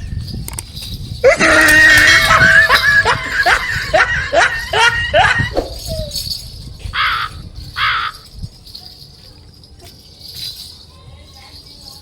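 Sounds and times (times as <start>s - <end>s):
faint high jingling: 0.0s - 12.0s
crow cawing: 7.0s - 8.2s.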